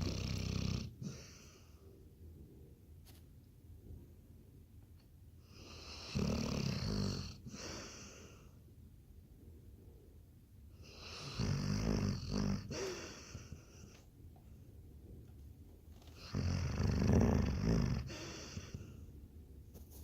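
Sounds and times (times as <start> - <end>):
dog snoring: 0.0 - 1.8, 5.4 - 8.4, 10.8 - 13.9, 16.1 - 19.0.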